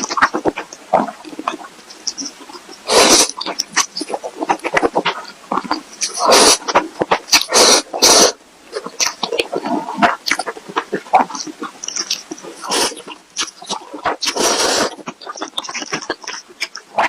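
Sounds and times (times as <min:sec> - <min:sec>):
chewing with wet mouth clicks: 0:00.0 - 0:08.1, 0:08.7 - 0:17.0
person slurping noodles: 0:01.0 - 0:05.0, 0:06.0 - 0:10.5, 0:11.3 - 0:16.2.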